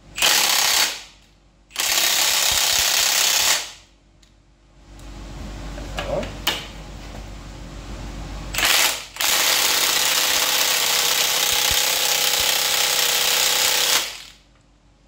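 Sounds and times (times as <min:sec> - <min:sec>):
handheld power tool running: 0:00.2 - 0:01.1, 0:01.7 - 0:03.8, 0:08.6 - 0:14.4.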